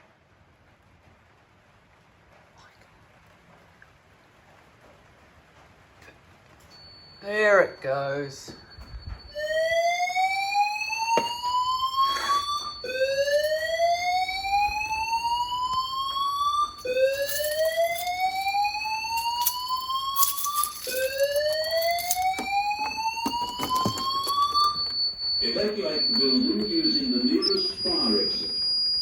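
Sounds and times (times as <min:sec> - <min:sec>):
faint steady high tone: 0:06.7 - 0:29.0
fire alarm whooping tone: 0:07.2 - 0:29.0.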